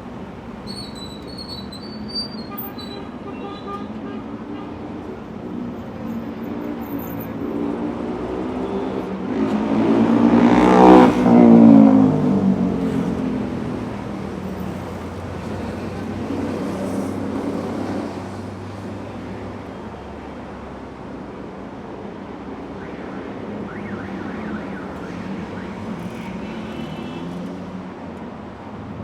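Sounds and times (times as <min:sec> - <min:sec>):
traffic noise: 0:00.0 - 0:29.0
vehicle passing close by: 0:07.3 - 0:19.1.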